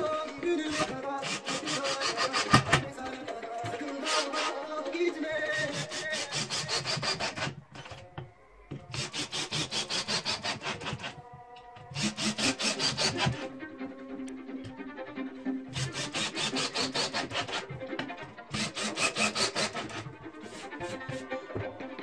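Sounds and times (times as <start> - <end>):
hand saw cutting wood: 0.0 - 4.6, 5.4 - 8.0, 8.7 - 11.2, 11.9 - 13.5, 15.7 - 21.4.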